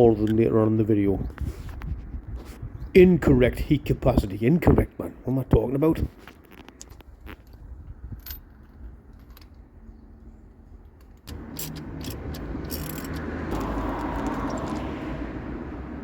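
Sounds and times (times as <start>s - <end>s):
metallic clinks of hand tools: 11.3s - 14.8s.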